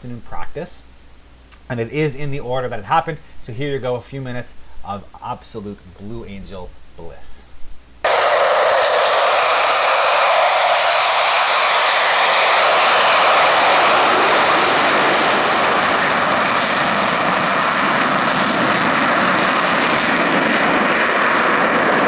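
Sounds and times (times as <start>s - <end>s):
jet engines roaring: 8.0s - 22.0s.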